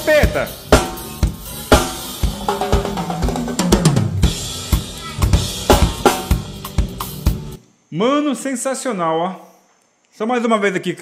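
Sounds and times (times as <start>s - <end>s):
drum kit played fast: 0.0s - 7.6s.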